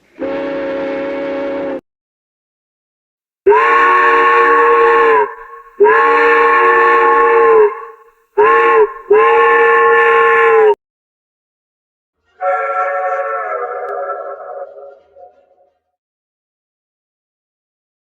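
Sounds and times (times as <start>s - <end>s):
steam train whistle blasts: 0.0s - 1.8s, 3.5s - 10.8s, 12.4s - 15.8s.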